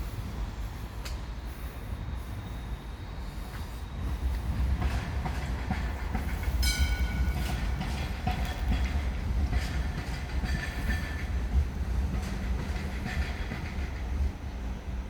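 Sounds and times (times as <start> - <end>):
train rumbling past: 0.0 - 15.0
wheels clicking over track: 4.8 - 14.1.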